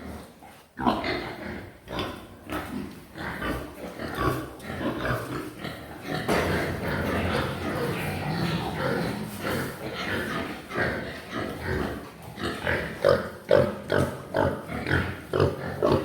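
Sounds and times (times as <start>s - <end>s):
pigs grunting: 0.0s - 16.0s.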